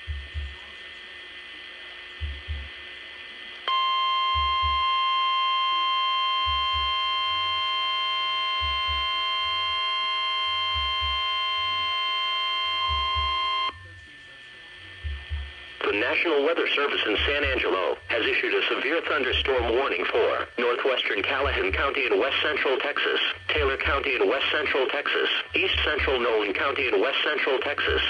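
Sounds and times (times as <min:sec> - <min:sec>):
loud electronic alarm tone: 0:03.7 - 0:14.0, 0:15.0 - 0:26.9.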